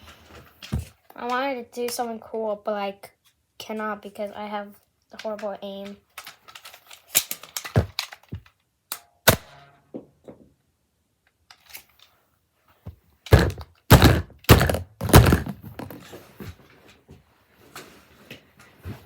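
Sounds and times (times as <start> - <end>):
dull thuds and knocks: 7.8 - 8.4, 13.3 - 16.0.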